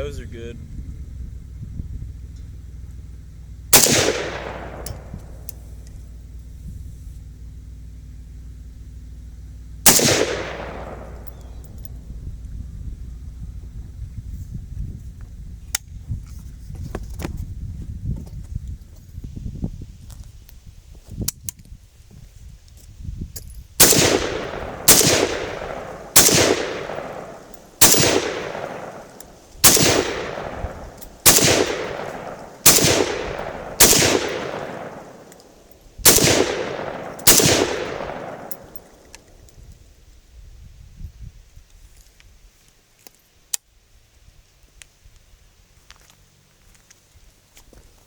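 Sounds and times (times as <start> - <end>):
pistol gunshots echoing: 3.8 - 5.5, 9.9 - 11.6, 23.8 - 35.4, 36.0 - 39.0.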